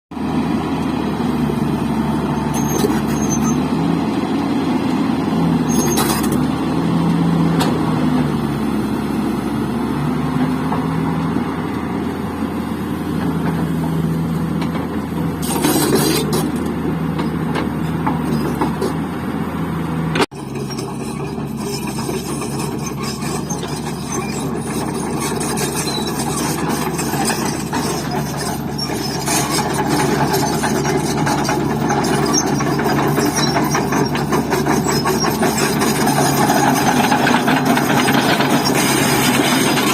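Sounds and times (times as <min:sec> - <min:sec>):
diesel engine running: 0:00.1 - 0:39.9.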